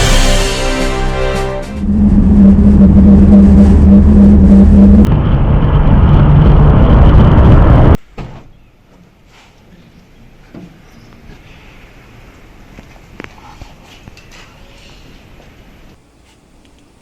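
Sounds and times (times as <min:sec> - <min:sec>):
motor-like drone: 0:00.0 - 0:08.0.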